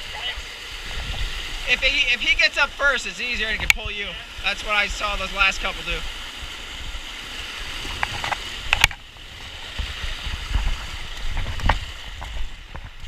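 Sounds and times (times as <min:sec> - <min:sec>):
river water rushing: 0:00.0 - 0:13.0
sharp knocks and splashes: 0:00.9 - 0:04.6, 0:07.2 - 0:13.0.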